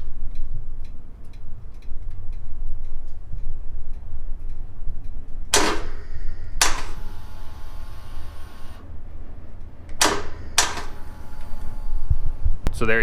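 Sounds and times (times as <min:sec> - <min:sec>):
electric starter cranking: 0:05.6 - 0:08.9, 0:09.9 - 0:12.6.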